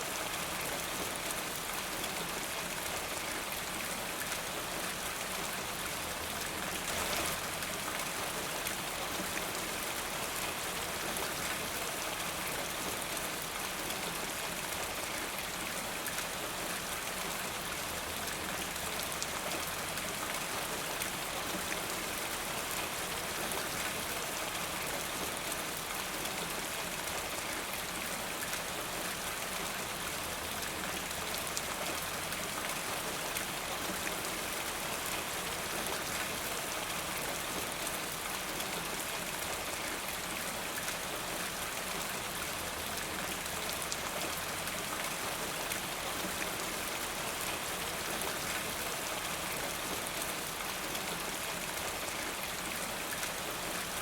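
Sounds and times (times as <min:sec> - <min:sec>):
rain falling on leaves: 0:00.0 - 0:54.0.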